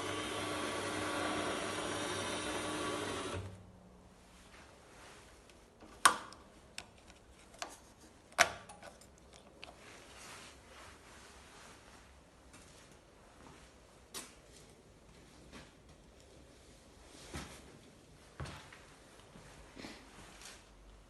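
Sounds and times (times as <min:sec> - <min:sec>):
metal lathe motor whine: 0:00.0 - 0:03.5.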